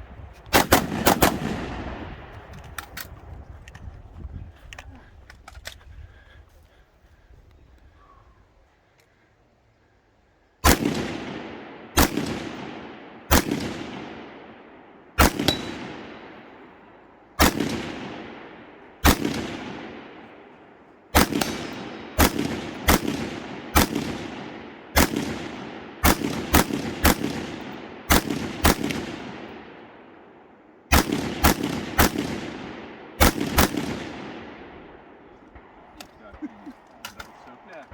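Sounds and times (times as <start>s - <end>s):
rifle shots with echo: 0.5s - 3.0s, 10.6s - 37.7s.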